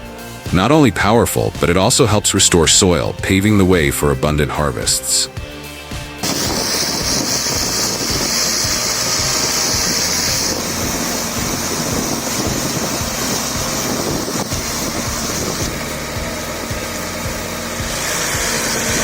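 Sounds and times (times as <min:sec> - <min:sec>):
loud grinding hiss: 0:05.1 - 0:19.0
stump grinder rumbling: 0:06.2 - 0:19.0.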